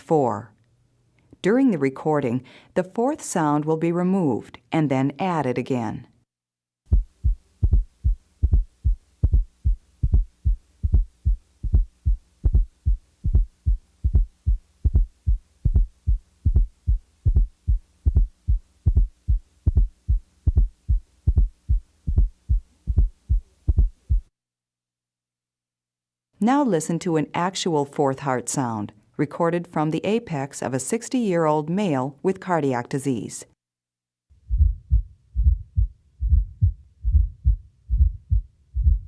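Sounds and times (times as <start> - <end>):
faint steady hum: 6.9 - 24.3, 34.4 - 39.0
heartbeat low thuds: 6.9 - 24.3, 34.4 - 39.0.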